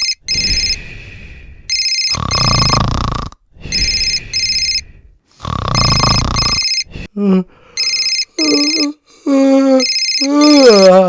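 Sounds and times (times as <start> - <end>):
telephone ringing: 1.7 - 2.8, 3.7 - 4.9, 5.7 - 6.9, 7.8 - 9.0, 9.8 - 10.9
heavy snoring: 2.1 - 3.4, 5.4 - 6.6.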